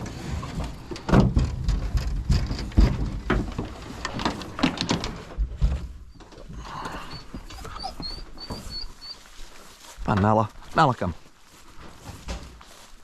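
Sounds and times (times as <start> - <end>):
knocks and clatters: 0.0 - 6.4
scuffing: 7.3 - 13.0.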